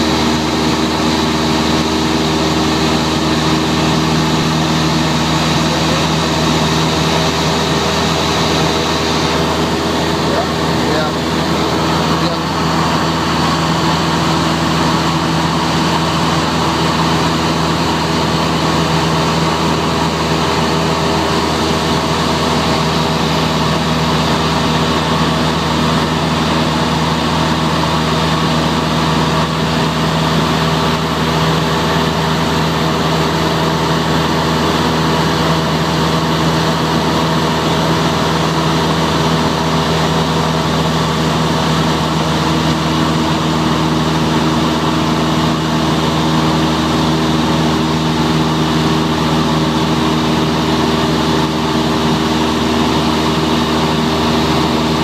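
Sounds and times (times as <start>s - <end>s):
propeller plane engine droning: 0.0s - 55.0s.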